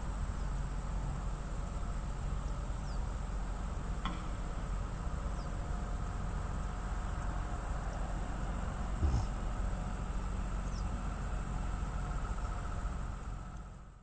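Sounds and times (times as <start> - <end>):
low rumble: 9.0 - 9.4.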